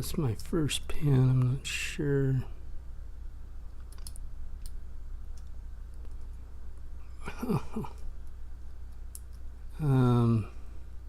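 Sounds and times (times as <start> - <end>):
steady low hum: 0.0 - 11.0
person murmuring: 7.1 - 8.1, 9.7 - 10.6.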